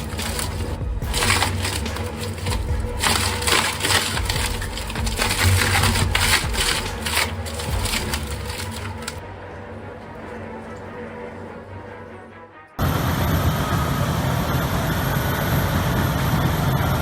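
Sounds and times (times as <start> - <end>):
wood cracking: 0.0 - 9.2
wood chipper drone: 0.0 - 17.0.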